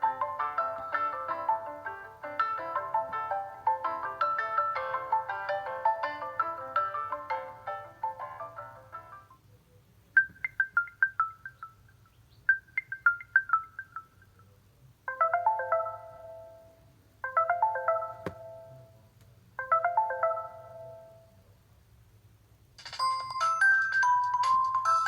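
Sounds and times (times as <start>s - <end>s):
melodic phone ringtone: 0.0s - 9.2s, 10.2s - 11.8s, 12.5s - 14.4s, 15.1s - 18.8s, 19.6s - 21.2s, 23.0s - 25.0s.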